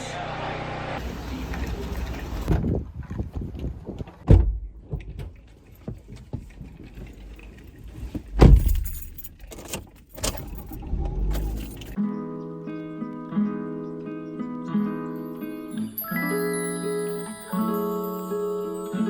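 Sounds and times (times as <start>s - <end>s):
jangling and rattling: 5.0s - 12.0s.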